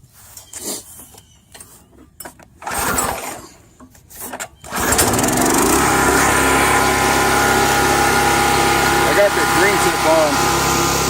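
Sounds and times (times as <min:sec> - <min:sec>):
small gas engine running: 0:02.6 - 0:03.5, 0:04.6 - 0:11.0
recoil cord pull-start: 0:02.6 - 0:03.6, 0:04.2 - 0:06.5.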